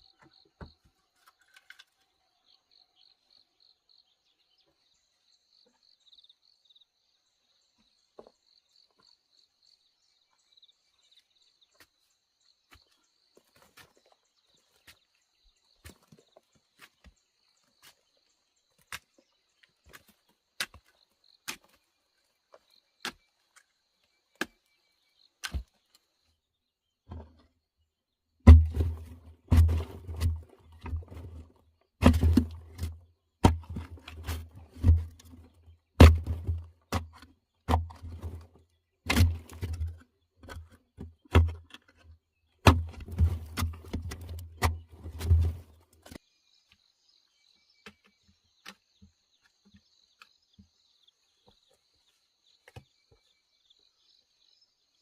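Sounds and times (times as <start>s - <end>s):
hand tool heavy thuds: 28.5s - 38.5s.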